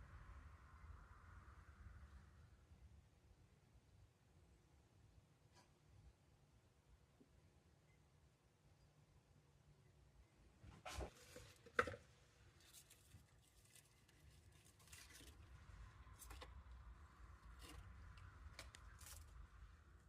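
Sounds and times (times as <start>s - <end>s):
handling rustles: 10.8s - 16.7s.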